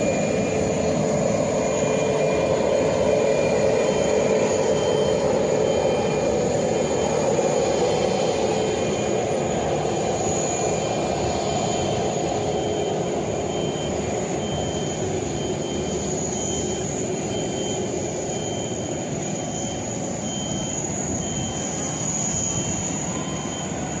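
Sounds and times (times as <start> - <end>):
jet engines running: 0.0 - 24.0.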